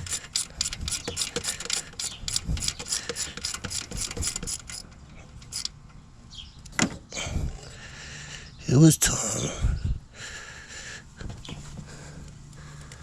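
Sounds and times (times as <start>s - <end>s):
ratchet wrench clicking: 0.0s - 5.8s.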